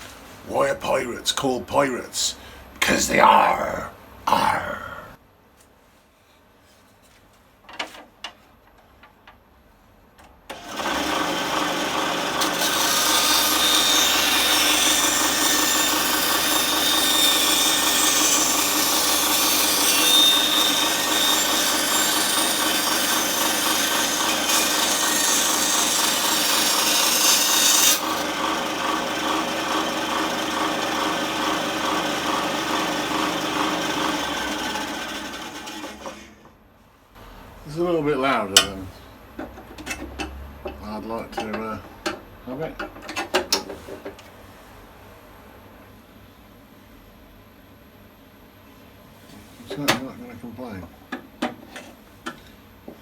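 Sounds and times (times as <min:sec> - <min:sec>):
bandsaw motor humming: 0:10.5 - 0:36.2
bandsaw blade cutting wood: 0:10.5 - 0:36.3.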